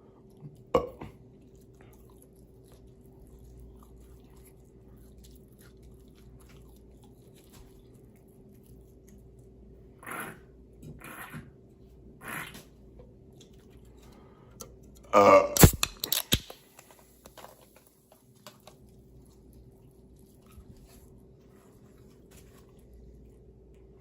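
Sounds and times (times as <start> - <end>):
person burping: 0.7 - 1.2, 15.0 - 15.9
sharp clicks: 15.6 - 16.6.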